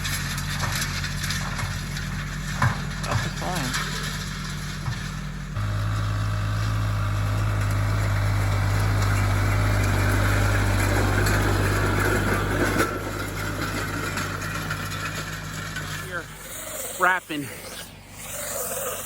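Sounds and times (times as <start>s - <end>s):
tractor engine under load: 0.0s - 19.0s.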